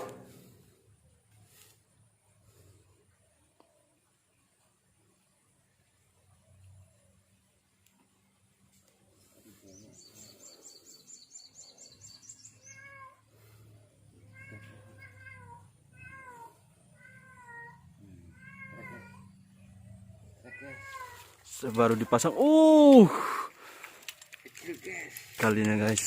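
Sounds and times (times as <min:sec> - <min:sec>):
cat meowing: 0:14.2 - 0:19.4, 0:20.4 - 0:21.3.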